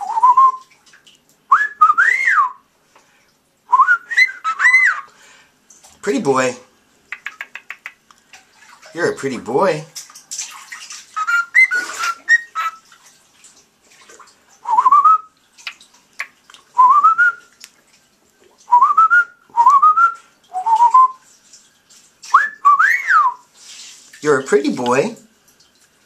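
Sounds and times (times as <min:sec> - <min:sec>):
cockatiel whistling: 0:03.8 - 0:05.1, 0:11.2 - 0:12.8, 0:22.3 - 0:23.4.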